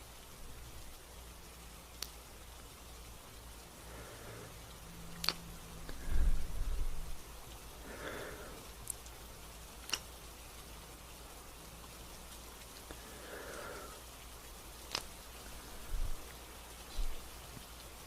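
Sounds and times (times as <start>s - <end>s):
gentle steady rain: 0.0s - 18.0s
drip-like ticks: 0.8s - 6.2s, 7.4s - 18.0s
person breathing softly: 3.8s - 4.7s, 5.9s - 6.9s, 7.8s - 8.8s, 12.9s - 14.1s.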